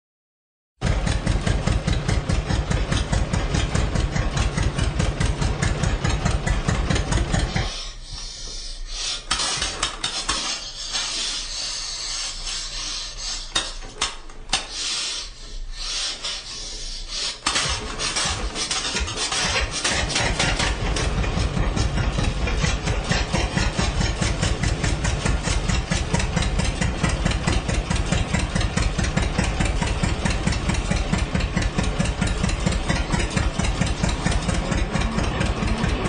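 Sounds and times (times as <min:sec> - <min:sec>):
tractor engine chugging: 0:00.8 - 0:36.0
uneven rasping sound: 0:07.2 - 0:28.2, 0:29.5 - 0:36.0.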